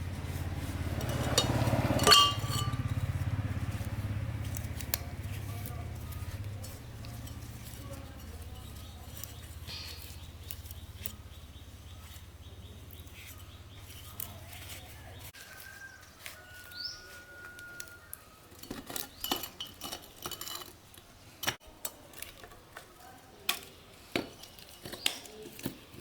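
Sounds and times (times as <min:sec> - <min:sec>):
low steady hum: 0:00.0 - 0:14.4
metal objects clinking: 0:00.8 - 0:04.9, 0:18.5 - 0:20.8.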